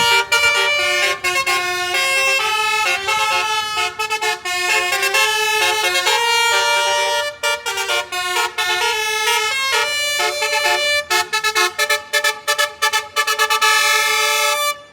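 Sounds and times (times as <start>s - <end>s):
musical bus horn playing tune: 0.0s - 14.9s.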